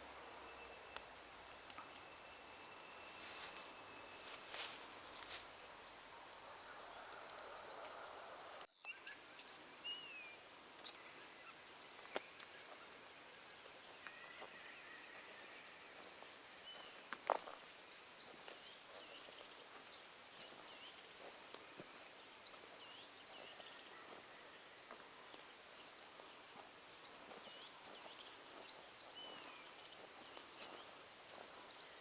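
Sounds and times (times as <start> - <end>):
outdoor hiss: 0.0 - 6.4
small birds chirping: 0.0 - 32.0.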